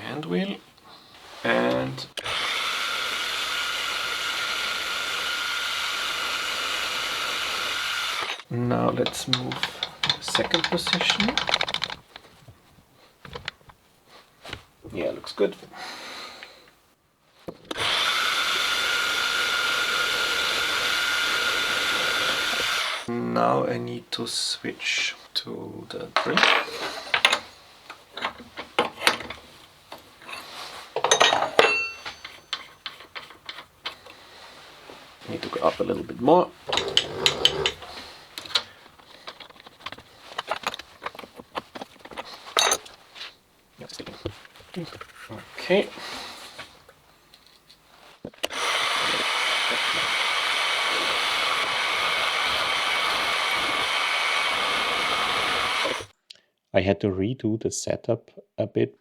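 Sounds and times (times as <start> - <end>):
milling machine motor whirring: 2.2 - 8.4, 17.8 - 23.1, 36.7 - 37.8, 48.4 - 56.1
metal tooling clinking and rattling: 8.2 - 12.4, 26.2 - 27.5, 28.1 - 34.1, 36.6 - 43.0
metallic ring: 31.1 - 32.8.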